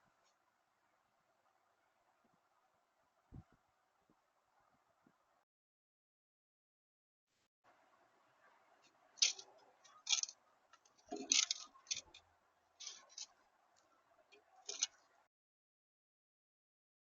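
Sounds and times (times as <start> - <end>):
faint steady hum: 0.0 - 5.4, 7.4 - 15.3
birds tapping at a feeder: 9.2 - 12.2.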